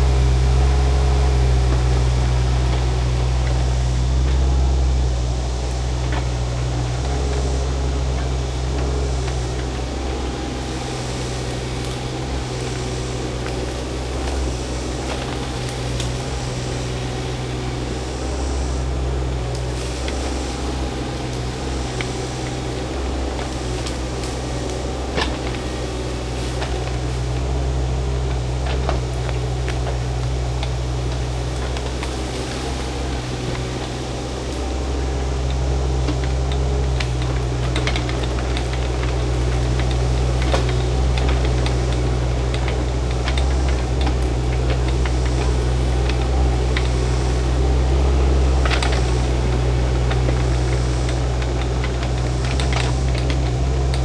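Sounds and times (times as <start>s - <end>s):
excavator engine running: 0.0s - 54.0s
wood cracking: 0.0s - 54.0s
faint clicks and knocks: 28.1s - 54.0s.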